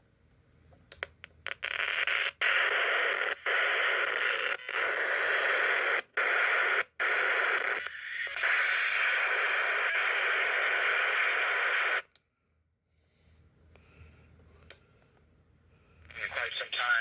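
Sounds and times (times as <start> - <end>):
radio static hiss: 1.6 - 12.1, 16.1 - 17.0.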